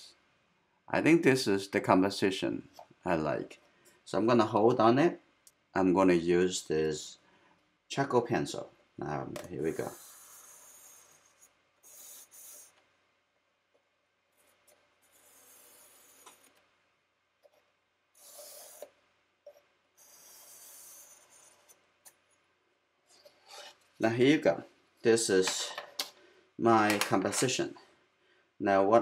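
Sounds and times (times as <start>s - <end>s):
pencil scratching on paper: 9.6s - 12.8s, 14.3s - 16.6s, 17.4s - 22.2s.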